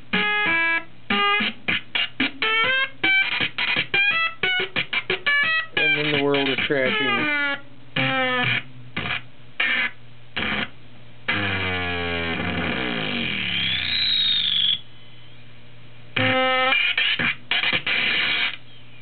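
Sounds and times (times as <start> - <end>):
low electrical hum: 0.0 - 19.0
toy keyboard electronic notes: 0.1 - 8.6, 16.2 - 18.6.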